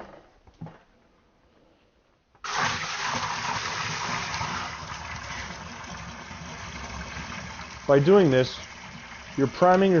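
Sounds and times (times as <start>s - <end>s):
water pouring into a pit: 2.4s - 10.0s.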